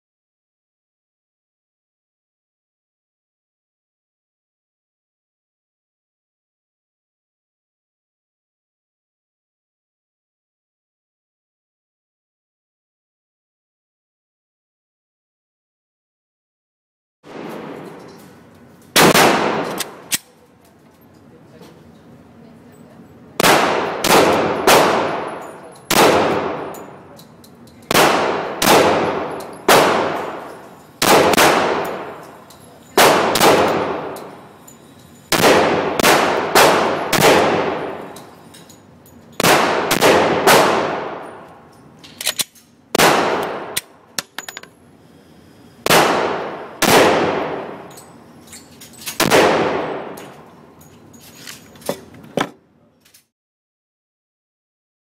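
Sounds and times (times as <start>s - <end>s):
pistol shots echoing: 18.9s - 20.2s, 23.4s - 27.1s, 27.9s - 34.5s, 35.3s - 38.3s, 39.4s - 41.5s, 42.9s - 44.0s, 45.9s - 47.9s, 49.2s - 50.4s.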